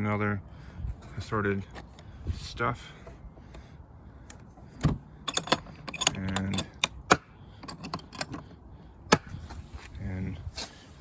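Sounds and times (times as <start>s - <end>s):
clicks and rattles of plastic hardware: 4.4s - 8.5s.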